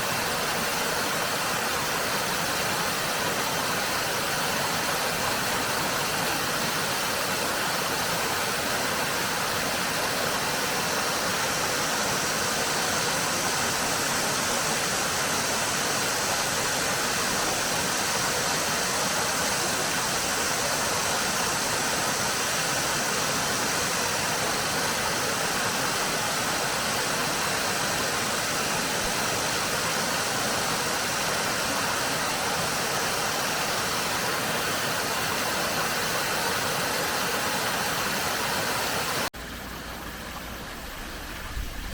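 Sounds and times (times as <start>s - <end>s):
stream rushing over rocks: 0.0s - 41.9s.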